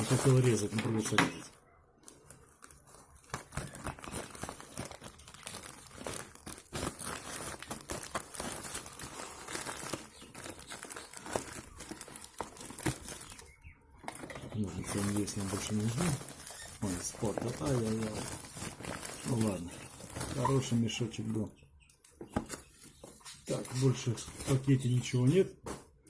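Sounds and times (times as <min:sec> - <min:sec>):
plastic bag crinkling and tearing: 0:00.0 - 0:21.4.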